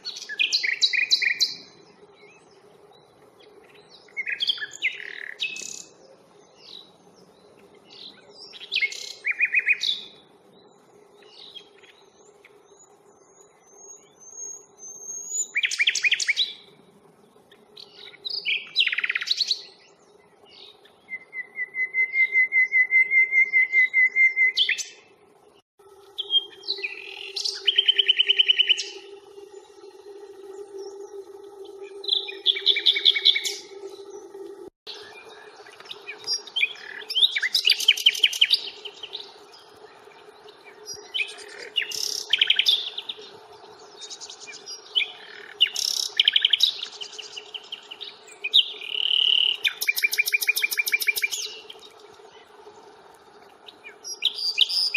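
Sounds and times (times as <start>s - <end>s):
nightingale singing: 0.0s - 16.8s, 17.5s - 25.1s, 26.0s - 52.5s, 53.6s - 54.9s
low steady hum: 24.9s - 54.9s.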